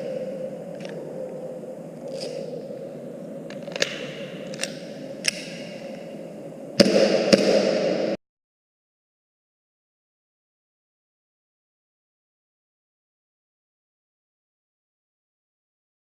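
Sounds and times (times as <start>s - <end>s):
low hum: 0.0s - 8.2s
airsoft pistol snaps: 3.6s - 5.8s.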